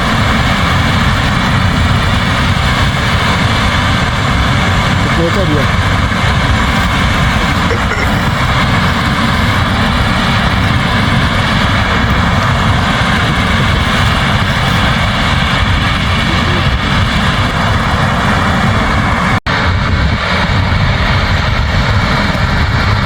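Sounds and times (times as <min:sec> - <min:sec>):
combine harvester threshing: 0:00.0 - 0:23.0.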